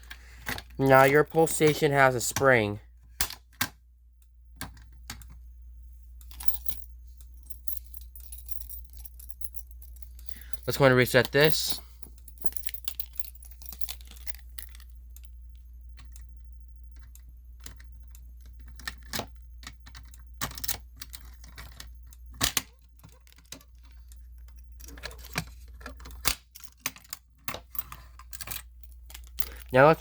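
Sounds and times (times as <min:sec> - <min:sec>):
low steady hum: 0:00.0 - 0:30.0
alarm handle clicks and rattles: 0:17.0 - 0:29.7.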